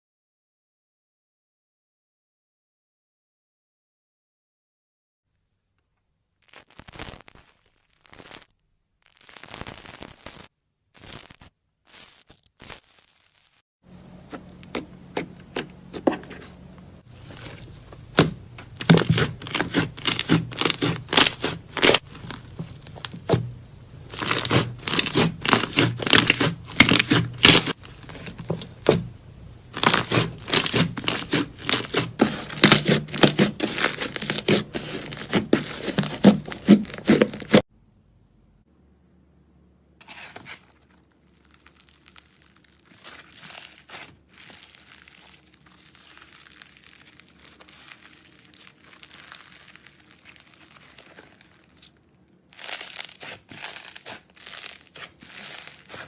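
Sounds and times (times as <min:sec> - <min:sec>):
slime crackling and popping: 0:06.4 - 0:13.6, 0:17.4 - 0:23.4, 0:24.0 - 0:29.0, 0:29.7 - 0:37.6, 0:40.1 - 0:56.0.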